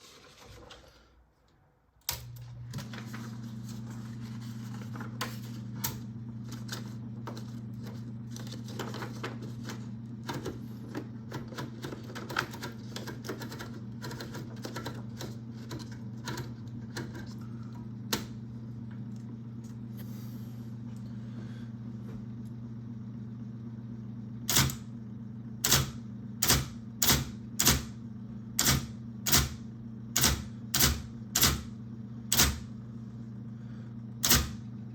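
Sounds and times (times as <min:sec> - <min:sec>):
electric typewriter motor humming: 0:02.0 - 0:21.6, 0:24.4 - 0:34.9
typewriter key strikes: 0:25.7 - 0:27.9, 0:30.2 - 0:31.7.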